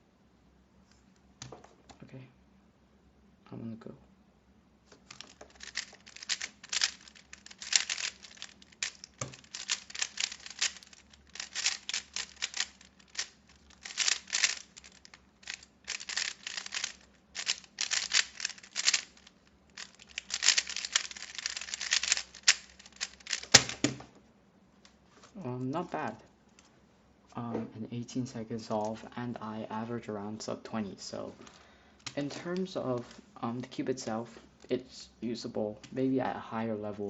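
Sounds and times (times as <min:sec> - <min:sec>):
plastic puzzle cube clicking: 0:05.1 - 0:24.0.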